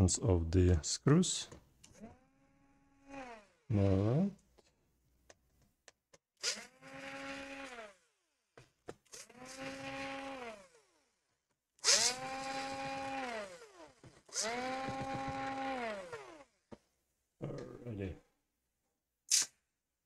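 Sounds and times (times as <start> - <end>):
electric screwdriver whine: 6.4 - 8.2, 9.1 - 11.1, 11.8 - 16.6.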